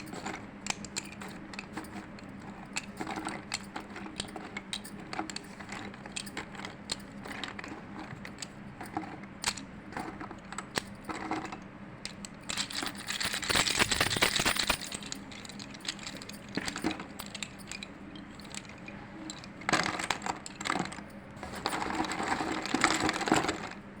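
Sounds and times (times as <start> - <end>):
slate pencils crunching: 12.5 - 23.8.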